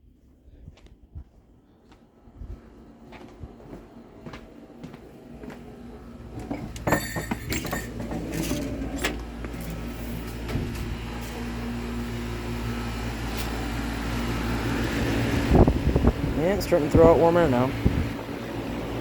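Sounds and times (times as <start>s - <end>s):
compressor hum: 0.0s - 19.0s
outdoor fan rushing: 0.0s - 19.0s
knocks and clatters: 6.4s - 9.7s.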